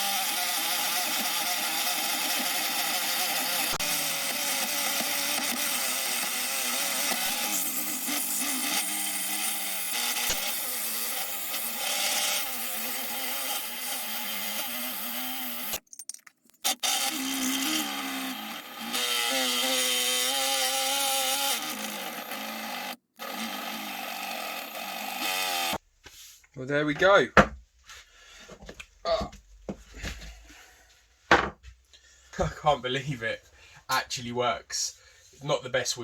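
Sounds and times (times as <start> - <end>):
lathe tool scraping wood: 0.0 - 15.8, 16.7 - 25.8.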